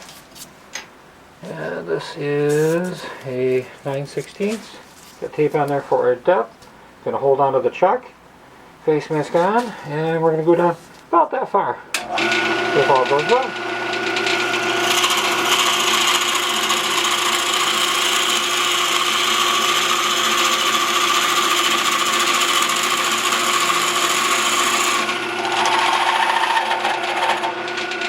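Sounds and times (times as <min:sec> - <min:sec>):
lathe motor hum: 0:12.2 - 0:28.0
spade bit boring into wood: 0:12.2 - 0:28.0.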